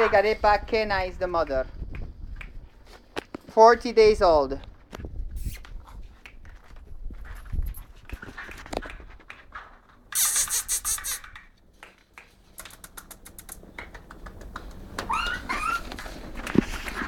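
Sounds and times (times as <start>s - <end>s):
fast clatter of clicks: 8.0s - 15.1s
puppy whimpering: 15.0s - 16.3s.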